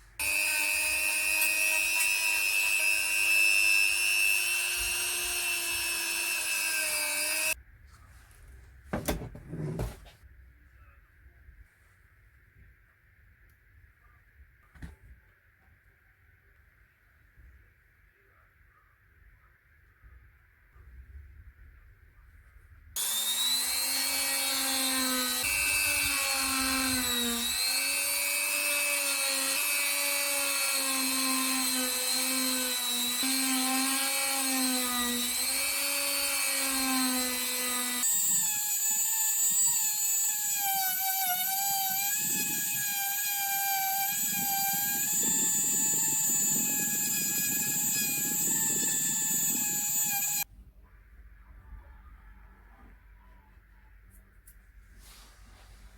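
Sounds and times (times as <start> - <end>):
power tool motor whining: 0.2 - 7.6, 23.0 - 50.4.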